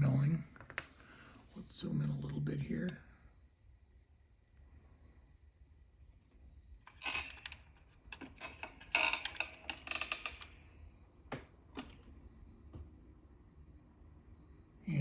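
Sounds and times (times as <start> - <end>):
metal lock parts clicking: 6.9 - 10.5.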